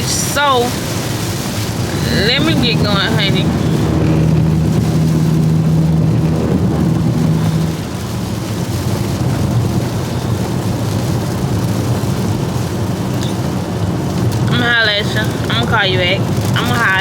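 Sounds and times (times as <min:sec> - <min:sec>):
car engine and road noise: 0:00.0 - 0:17.0
steady hum: 0:01.2 - 0:08.4.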